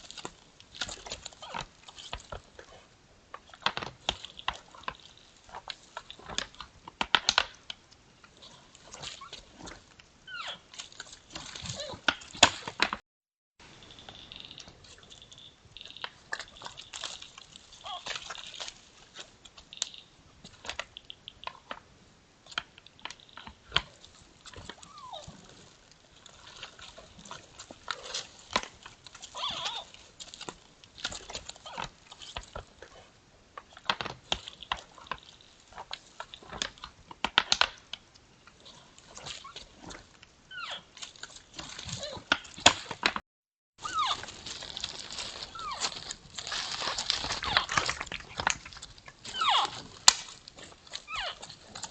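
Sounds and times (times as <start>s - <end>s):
deer calling: 43.8s - 44.3s, 49.3s - 49.9s.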